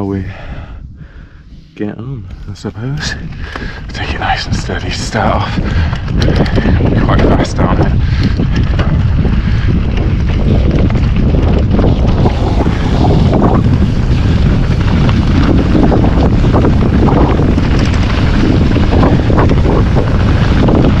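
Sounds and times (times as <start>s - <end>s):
wind buffeting microphone: 0.0s - 21.0s
bike clattering on rough trail: 2.8s - 21.0s.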